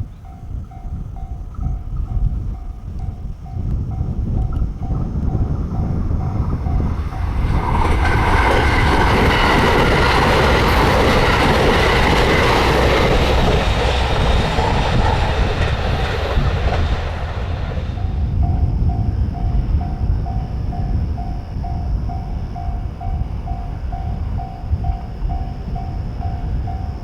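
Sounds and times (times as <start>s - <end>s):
level crossing warning bell: 0.2s - 13.7s, 17.9s - 27.0s
train wheels rushing on rails: 0.2s - 27.0s.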